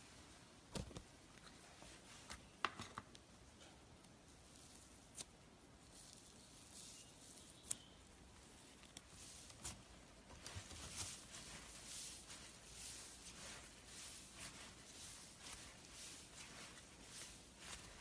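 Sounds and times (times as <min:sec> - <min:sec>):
slime squishing: 0:08.4 - 0:18.0.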